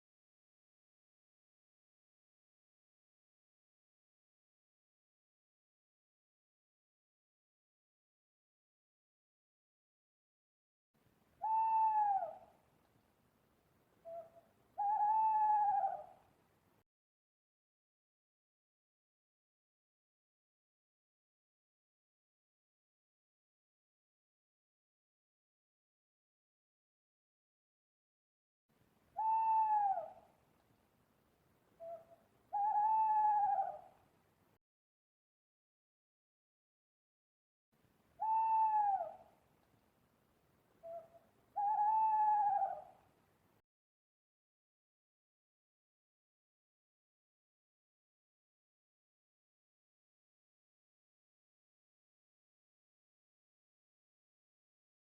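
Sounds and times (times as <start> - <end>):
owl hooting: 11.4 - 12.6, 14.0 - 16.2, 29.2 - 30.3, 31.8 - 34.0, 38.2 - 39.4, 40.8 - 43.0.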